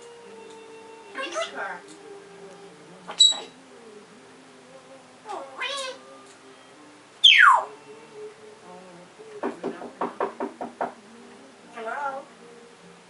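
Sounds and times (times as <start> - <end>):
parrot wavering call: 1.1 - 1.8, 3.1 - 3.6, 5.3 - 6.0, 7.2 - 7.8.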